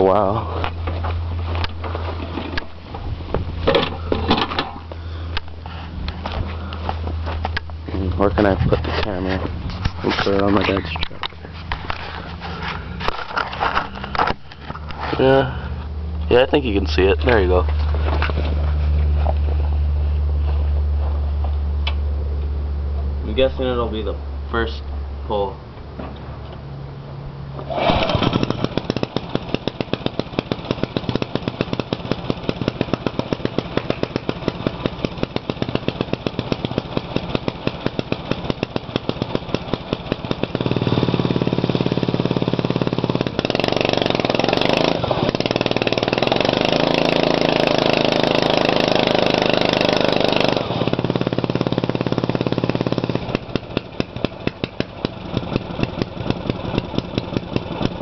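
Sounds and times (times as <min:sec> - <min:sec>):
pull cord starting engine: 0:03.6 - 0:05.6, 0:27.6 - 0:58.0
go-kart engine running: 0:27.6 - 0:58.0.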